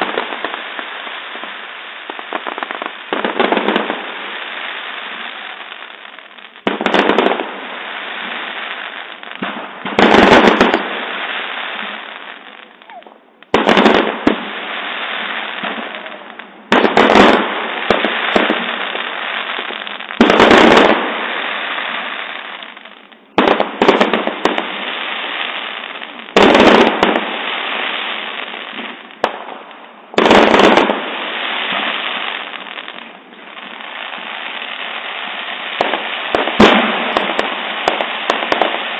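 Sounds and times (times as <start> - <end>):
fireworks bangs: 0.0 - 38.9
fireworks crackle and rumble: 0.0 - 38.9.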